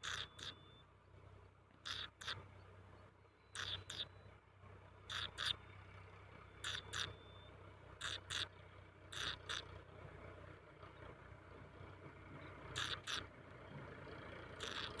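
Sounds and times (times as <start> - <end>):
bird harsh raspy calls: 0.0 - 0.8, 1.8 - 2.7, 3.4 - 4.3, 5.0 - 5.8, 6.5 - 9.8, 12.5 - 13.4, 14.4 - 15.0.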